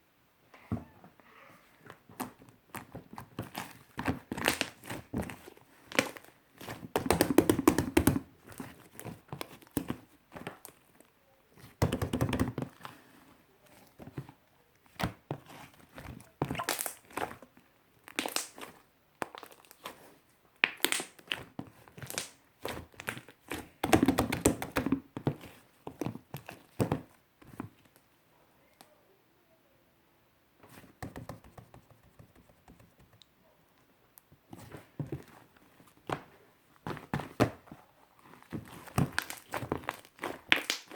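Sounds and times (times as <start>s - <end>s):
slime crackling and popping: 2.2s - 10.9s, 16.4s - 26.9s, 38.2s - 40.9s.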